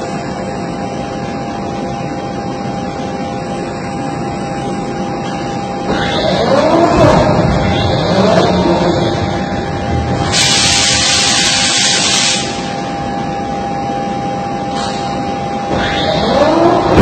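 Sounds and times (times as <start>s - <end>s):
machinery humming: 0.0s - 17.0s
hissing burst: 10.2s - 12.8s.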